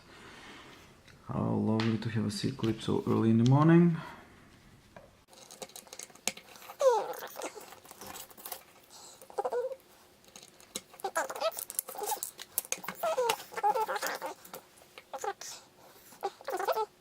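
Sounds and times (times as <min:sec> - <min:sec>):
metal tools clicking and scraping: 0:05.3 - 0:15.1
high squeaks: 0:11.0 - 0:14.5.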